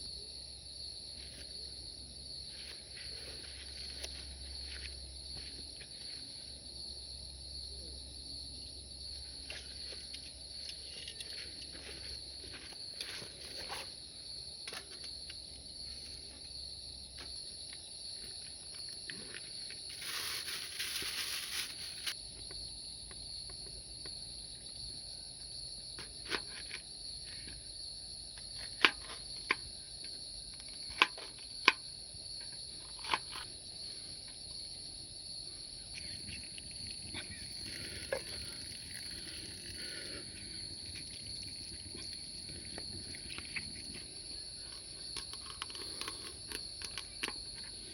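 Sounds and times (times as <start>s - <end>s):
insects shrilling: 19.8s - 22.2s, 35.4s - 47.9s
rustling: 19.9s - 22.2s.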